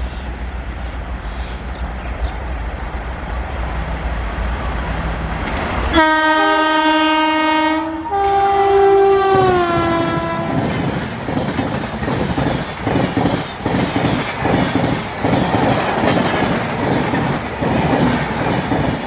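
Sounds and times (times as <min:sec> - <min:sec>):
train wheels rattling on track: 0:00.0 - 0:19.0
locomotive horn blasts: 0:05.9 - 0:10.6.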